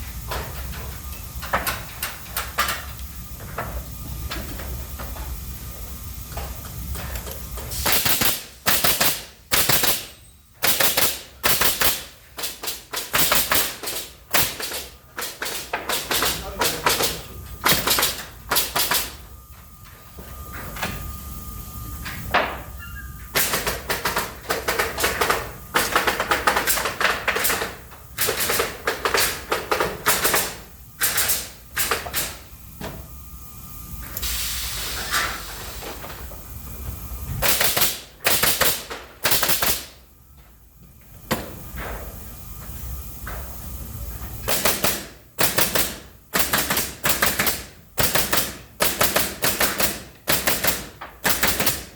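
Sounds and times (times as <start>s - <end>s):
machine rapid sharp bangs: 7.8s - 19.1s, 23.4s - 32.4s, 37.4s - 40.0s, 44.5s - 51.9s.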